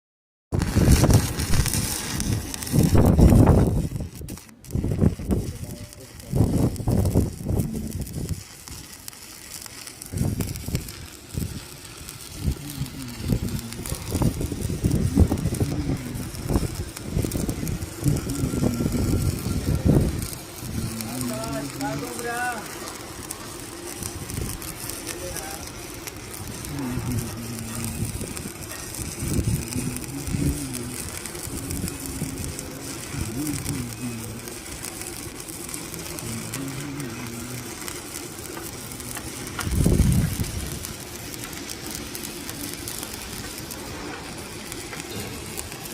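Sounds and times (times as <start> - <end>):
welding arc crackling: 0.5 - 45.9
low rumbling gusts: 12.3 - 21.8, 39.6 - 41.0.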